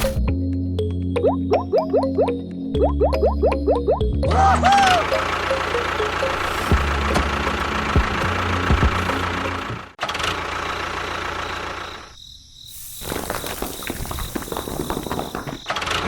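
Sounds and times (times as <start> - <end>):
engine-like low drone: 3.0 - 12.2.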